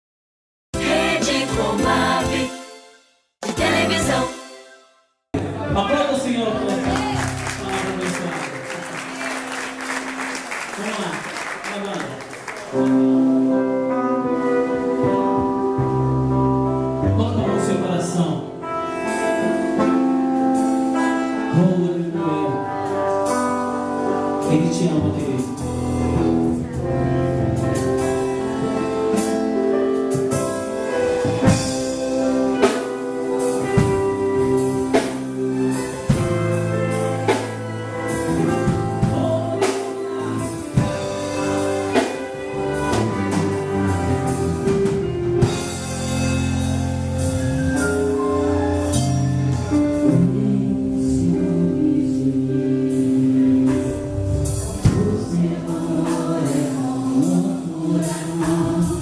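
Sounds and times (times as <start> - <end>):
drum kit striking: 0.8 - 4.8
gospel band music: 0.8 - 59.0.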